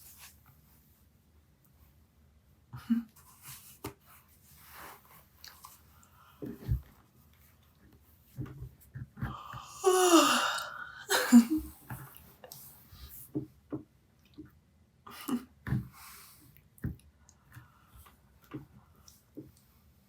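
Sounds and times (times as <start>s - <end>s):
woman yawning: 9.5s - 11.6s.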